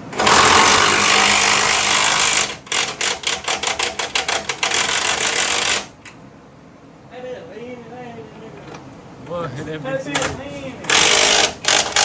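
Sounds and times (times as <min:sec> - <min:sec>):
air-powered wrench running: 0:00.1 - 0:06.0, 0:10.9 - 0:12.0.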